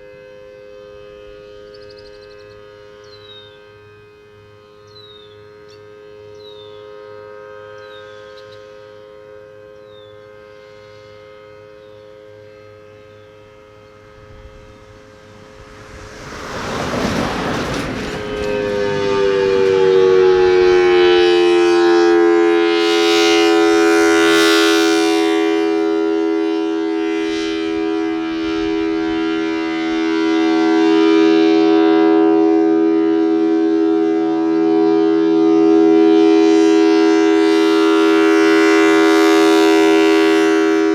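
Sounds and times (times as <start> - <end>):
siren two-note chord: 0.0 - 40.9
rush of air: 14.4 - 19.4.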